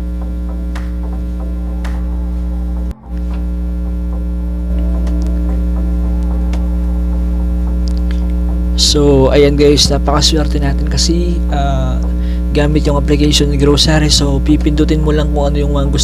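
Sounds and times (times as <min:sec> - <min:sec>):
electrical mains hum: 0:00.0 - 0:16.0.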